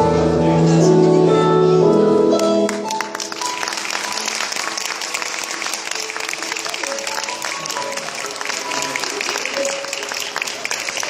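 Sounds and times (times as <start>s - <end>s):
music with sustained notes: 0.0s - 11.0s
audience applause: 2.7s - 11.0s.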